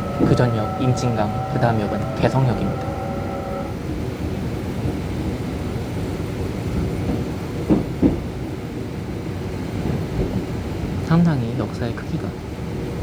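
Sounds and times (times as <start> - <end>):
wheels clacking over rail joint: 0.0 - 3.8
train rumbling on rails: 0.0 - 13.0.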